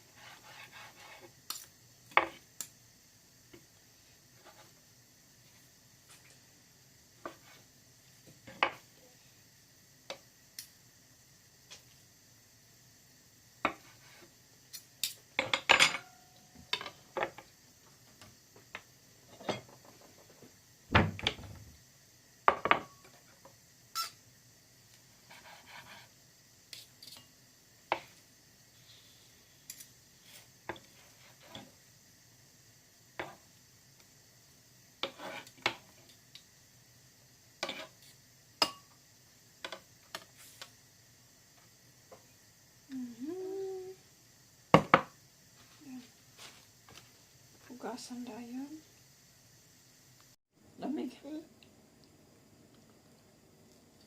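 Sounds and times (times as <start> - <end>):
heavy thump: 20.9 - 21.7.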